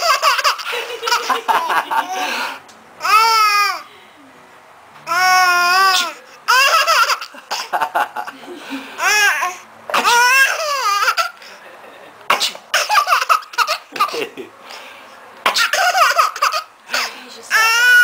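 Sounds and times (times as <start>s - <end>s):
baby laughing: 0.0s - 3.9s, 5.1s - 11.6s, 12.7s - 14.5s, 15.5s - 18.0s
baby squealing: 3.0s - 3.8s, 5.1s - 7.3s, 9.0s - 11.3s, 17.5s - 18.0s.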